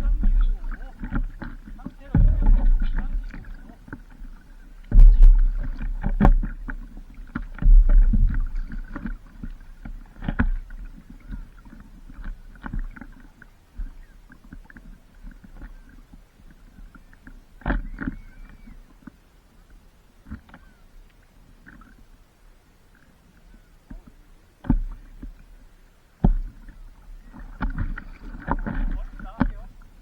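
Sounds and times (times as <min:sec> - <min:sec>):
low rumbling bursts: 0:00.0 - 0:03.9, 0:04.8 - 0:06.0
paddle strokes splashing water: 0:00.0 - 0:30.0.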